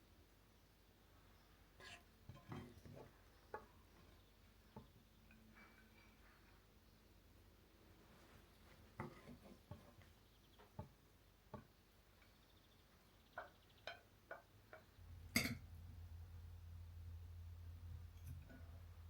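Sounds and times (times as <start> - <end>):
kitchenware clicks and taps: 13.4 - 15.6
low steady hum: 14.8 - 19.0.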